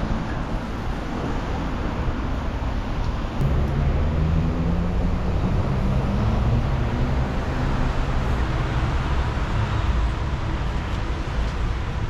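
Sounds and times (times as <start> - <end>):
road traffic passing: 0.1 - 12.0
low engine rumble: 3.3 - 10.1.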